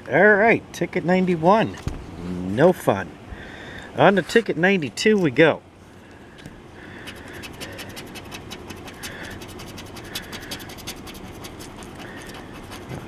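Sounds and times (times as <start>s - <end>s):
coin scratching lottery ticket: 7.0s - 13.0s.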